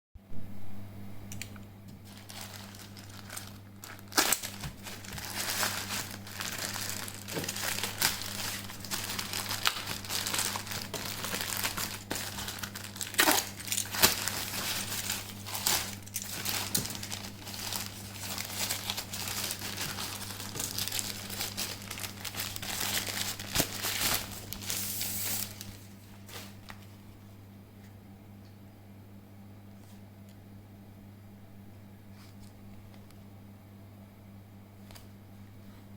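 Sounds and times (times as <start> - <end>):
steady low hum: 0.2 - 35.9
plastic packaging crinkling: 2.0 - 26.9.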